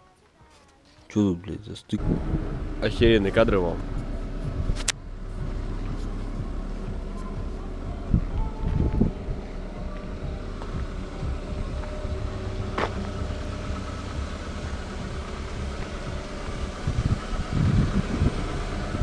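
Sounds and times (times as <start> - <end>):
car engine running: 2.0 - 19.0.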